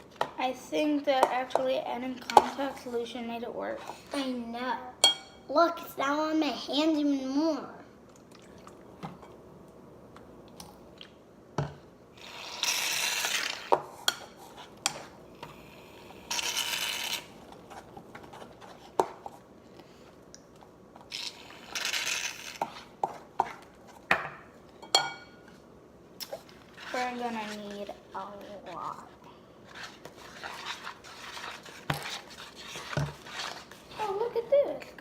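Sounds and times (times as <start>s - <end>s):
utensil clinking and scraping bowl: 1.0s - 4.4s, 26.3s - 35.0s.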